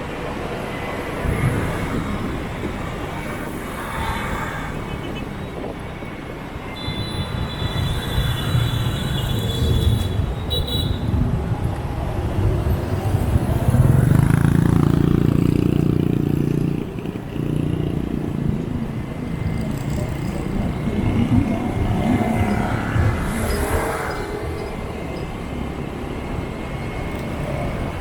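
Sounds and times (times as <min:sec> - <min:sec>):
road noise: 0:00.0 - 0:28.0
small motorbike engines: 0:11.6 - 0:28.0.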